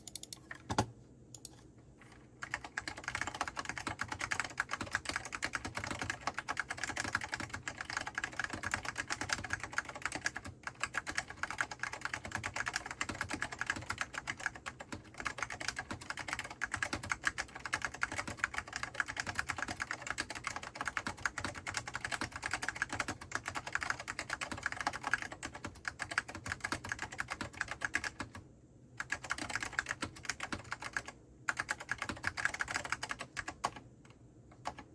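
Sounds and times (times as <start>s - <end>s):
keyboard keystroke clicks: 0.0s - 1.6s.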